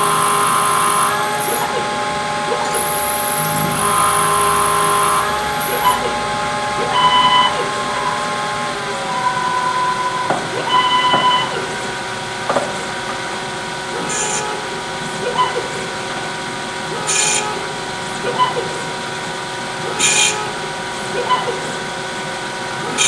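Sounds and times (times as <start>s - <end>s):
lathe motors whining: 0.0s - 23.0s
short high tones: 9.0s - 11.7s.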